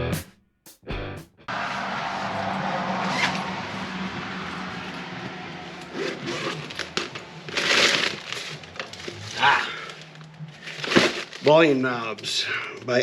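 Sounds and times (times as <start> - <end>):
loud plastic crackles: 5.1 - 12.0
shipping bag rustling: 5.9 - 12.1.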